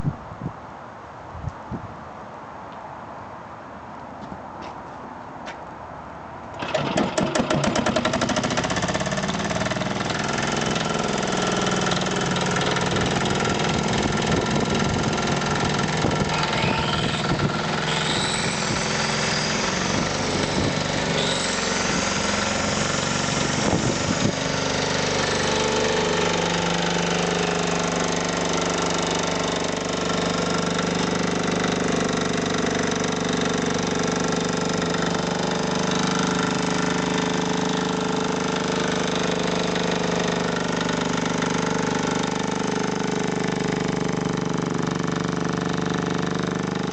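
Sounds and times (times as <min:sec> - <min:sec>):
diesel engine running: 0:06.5 - 0:46.9
faint high whine: 0:16.2 - 0:24.4.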